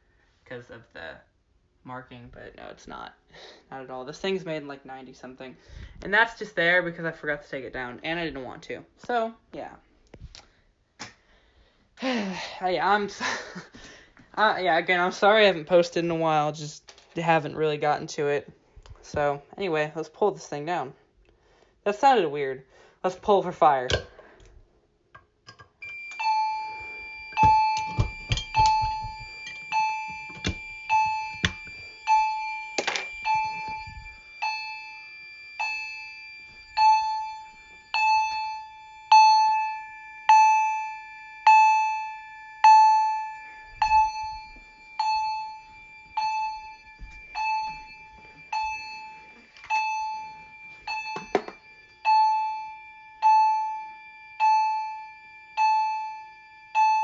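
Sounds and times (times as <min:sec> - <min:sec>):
fire alarm chime: 0:25.8 - 0:57.0
steady high alarm tone: 0:25.8 - 0:57.0.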